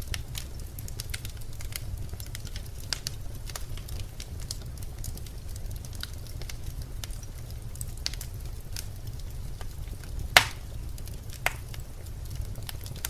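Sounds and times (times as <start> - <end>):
logs crackling in a fireplace: 0.0 - 13.0
low rumble of flames: 0.0 - 13.0
loud sharp pop: 10.4 - 10.6.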